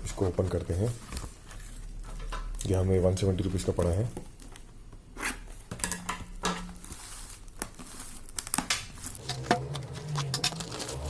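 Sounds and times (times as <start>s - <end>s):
packaging being torn and crinkled: 6.8s - 11.0s.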